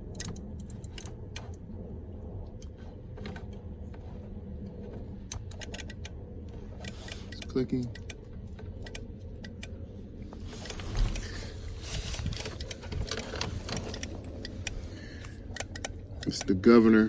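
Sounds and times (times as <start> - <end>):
handling rustling: 10.3 - 16.2
relay module clicking: 15.5 - 16.6.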